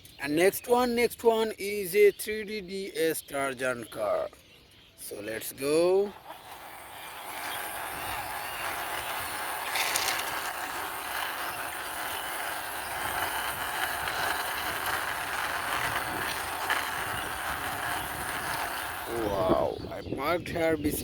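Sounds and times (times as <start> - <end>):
toy car wheels rolling: 5.3 - 19.9.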